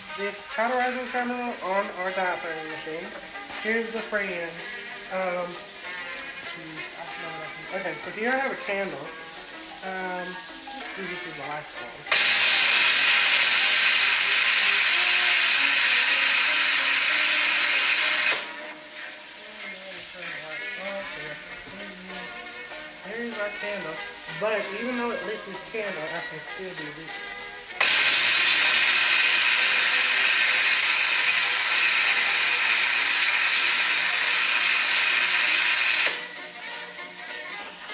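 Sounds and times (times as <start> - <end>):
electric spark discharge hissing: 12.0 - 25.8, 27.7 - 36.5.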